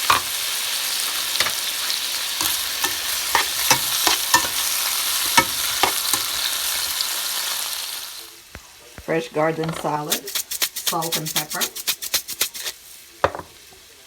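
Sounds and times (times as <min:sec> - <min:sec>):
food sizzling in a frying pan: 0:00.0 - 0:14.0
utensil scraping a pan: 0:02.4 - 0:06.9, 0:09.0 - 0:12.9.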